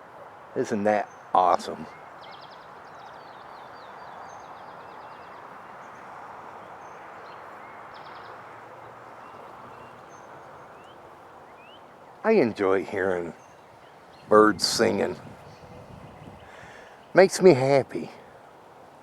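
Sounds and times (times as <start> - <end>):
outdoor background hiss: 0.0 - 19.0
songbirds singing: 0.0 - 19.0.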